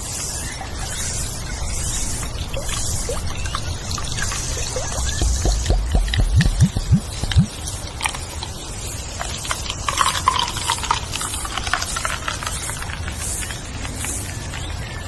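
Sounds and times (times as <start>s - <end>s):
bird chirps: 0.4s - 7.6s
scattered clicks: 4.6s - 7.5s.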